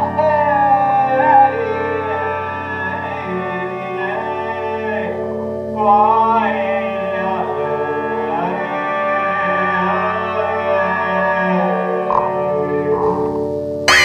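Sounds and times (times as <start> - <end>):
sliding lead melody: 0.0 - 14.0
steady drone: 11.8 - 14.0.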